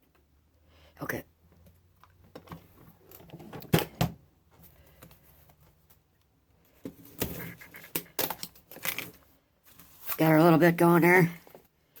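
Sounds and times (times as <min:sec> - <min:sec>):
rustling: 0:04.5 - 0:10.5.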